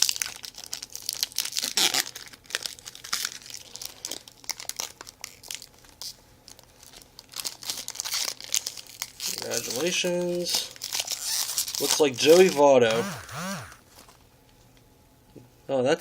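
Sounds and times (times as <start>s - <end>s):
plastic wrapper crinkling: 0.0s - 12.8s.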